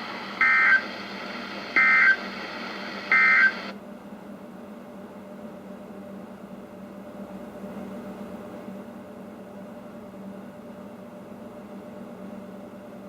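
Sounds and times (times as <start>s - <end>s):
broadcast hiss: 0.0s - 3.8s
harsh digital data bursts: 0.4s - 0.9s.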